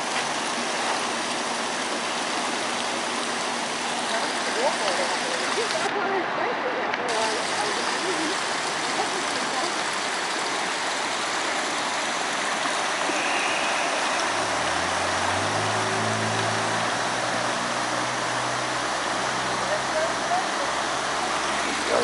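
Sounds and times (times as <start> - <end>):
floodwater rushing: 0.0 - 22.0
low engine hum: 10.7 - 22.0.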